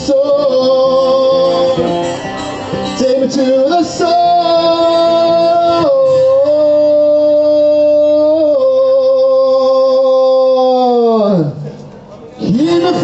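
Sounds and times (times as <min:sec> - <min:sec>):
acoustic guitar: 0:00.0 - 0:08.9
man singing a long note: 0:00.0 - 0:11.6, 0:12.4 - 0:13.0.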